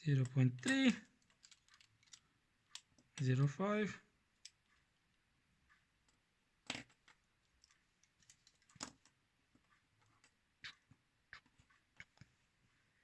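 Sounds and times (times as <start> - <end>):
pencils clicking on a table: 0.1 - 3.3, 6.1 - 9.2.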